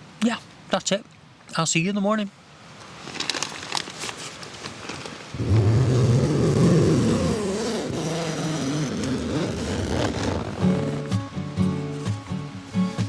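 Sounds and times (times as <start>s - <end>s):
background music with sliding tones: 10.4s - 13.0s.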